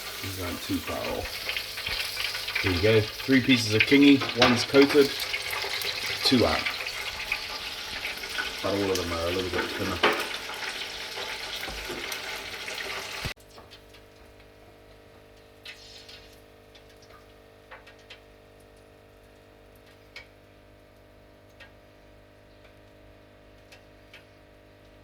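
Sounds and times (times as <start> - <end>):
hot oil sizzling: 0.0 - 14.1, 15.3 - 20.0.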